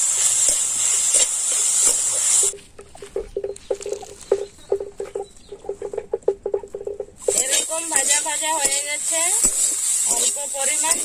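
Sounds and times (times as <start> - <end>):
food sizzling in a pan: 0.0 - 2.6, 7.2 - 11.0
short pitched pops and taps: 1.9 - 8.8.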